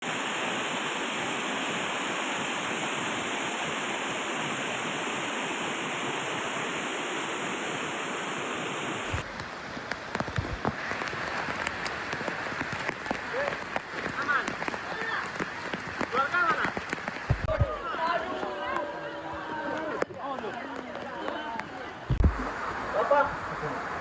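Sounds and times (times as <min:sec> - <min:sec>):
fast-flowing floodwater: 0:00.0 - 0:24.0
rain falling: 0:00.0 - 0:24.0
sharp knocks and splashes: 0:09.1 - 0:17.8, 0:22.1 - 0:22.7.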